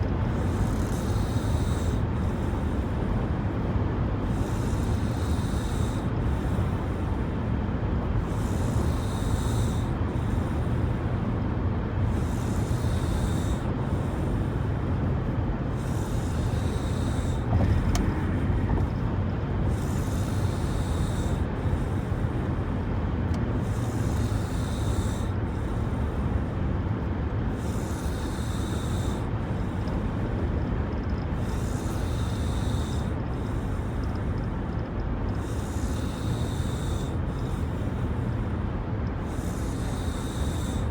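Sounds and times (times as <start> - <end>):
steady low rumble: 13.7 - 24.1.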